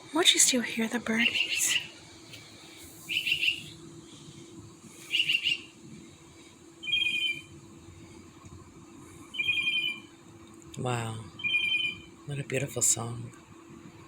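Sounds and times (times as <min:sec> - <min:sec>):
faint low hum: 0:00.0 - 0:14.0
bird singing: 0:01.1 - 0:01.9, 0:03.1 - 0:03.9, 0:05.0 - 0:05.8, 0:06.8 - 0:07.6, 0:09.3 - 0:10.1, 0:11.3 - 0:12.1.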